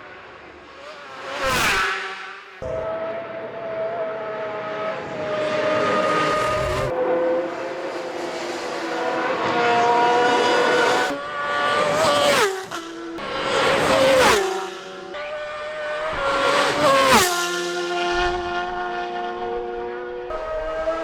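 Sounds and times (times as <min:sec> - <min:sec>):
racing motorcycles passing by: 0:00.0 - 0:21.0.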